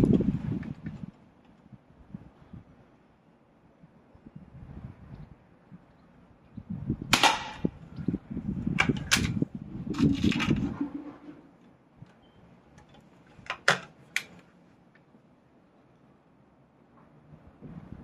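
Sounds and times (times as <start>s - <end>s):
air rifle cracks and clicks: 8.8s - 9.4s, 12.8s - 14.5s.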